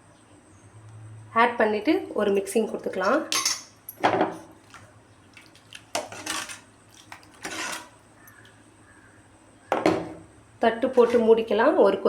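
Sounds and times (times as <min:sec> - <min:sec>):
spoon scraping a pan: 0:02.8 - 0:03.8, 0:06.0 - 0:08.5, 0:10.8 - 0:11.5.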